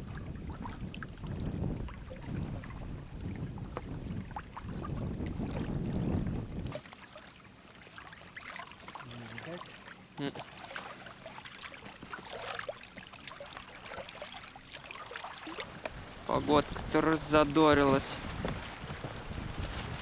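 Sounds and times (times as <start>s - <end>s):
wind buffeting microphone: 0.0s - 6.8s, 15.5s - 20.0s
waves lapping against boat hull: 0.0s - 20.0s.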